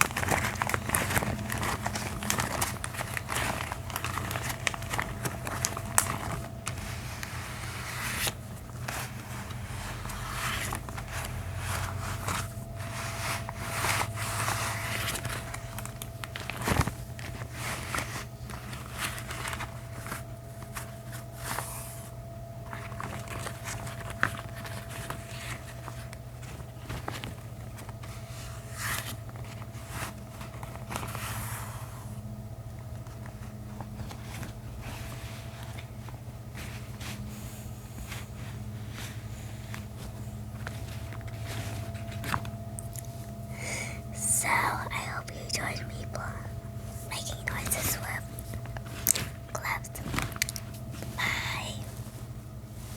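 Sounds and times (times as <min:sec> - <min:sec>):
gloved hands rubbing and crinkling: 0:00.0 - 0:21.8
faint steady hum: 0:00.0 - 0:52.9.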